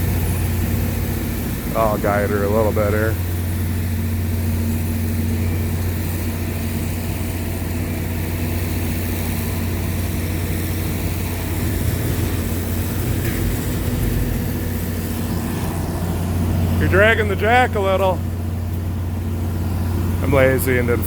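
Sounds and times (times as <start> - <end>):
loader engine humming: 0.0 - 21.0.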